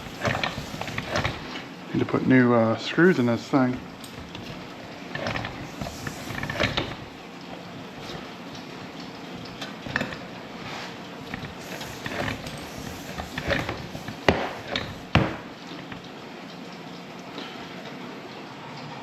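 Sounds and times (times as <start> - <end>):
tools clicking and clanking: 0.0 - 1.6, 3.6 - 7.1, 8.0 - 10.4, 11.3 - 16.1
sharp knocks: 13.5 - 15.5.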